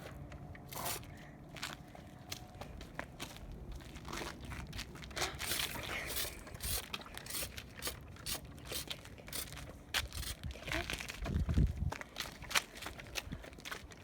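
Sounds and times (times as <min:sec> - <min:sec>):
footsteps crunching on dry ground: 0:01.5 - 0:06.1, 0:08.9 - 0:14.0.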